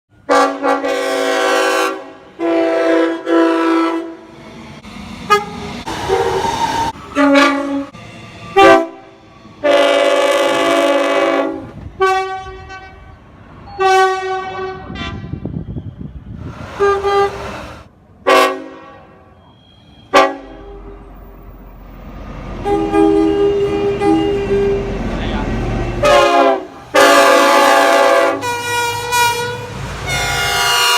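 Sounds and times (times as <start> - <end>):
low rumble of passing train: 0.1 - 30.9
train horn blasts: 0.2 - 4.2, 5.3 - 6.4, 7.1 - 8.0, 8.6 - 13.1, 13.7 - 15.6, 16.8 - 17.5, 18.2 - 19.3, 20.0 - 21.0, 22.6 - 30.9.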